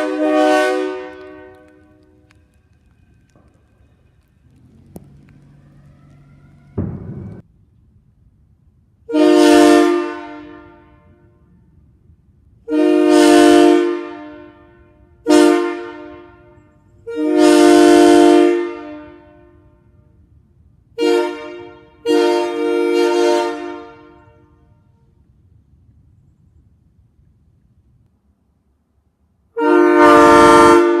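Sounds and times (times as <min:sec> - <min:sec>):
locomotive air horn blasts: 0:00.0 - 0:02.3, 0:09.0 - 0:11.8, 0:12.6 - 0:25.1, 0:29.5 - 0:31.0.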